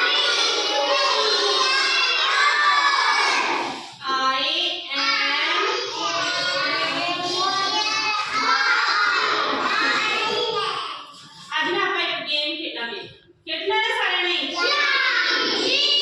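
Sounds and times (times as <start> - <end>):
children singing and shouting: 0.0 - 4.1, 4.8 - 11.6, 14.5 - 16.0.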